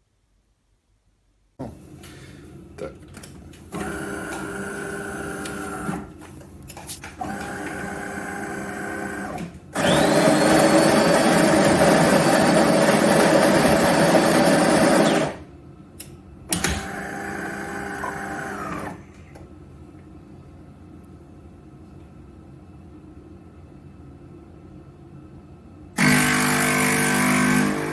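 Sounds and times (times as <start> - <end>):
coffee machine humming: 3.7 - 6.2, 7.2 - 15.5, 16.6 - 19.4, 26.0 - 27.9
coffee machine loud noisy run: 3.7 - 6.2, 7.2 - 15.5, 16.5 - 19.4, 26.0 - 27.9.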